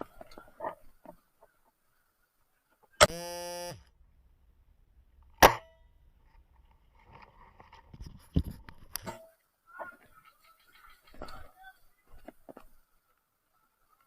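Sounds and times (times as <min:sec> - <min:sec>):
sharp clicks: 0:03.0 - 0:03.9.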